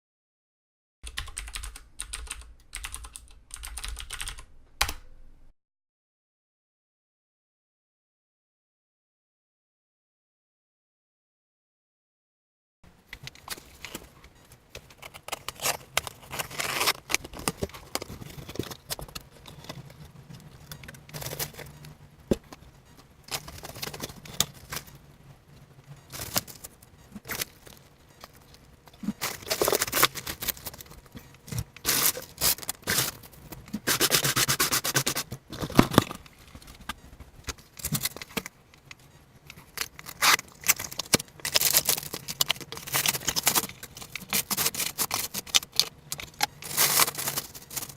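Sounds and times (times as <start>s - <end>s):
parts scraping and clicking: 13.1s - 47.9s
packaging rustling: 14.8s - 22.6s, 23.2s - 25.0s, 26.1s - 38.6s, 39.5s - 47.9s.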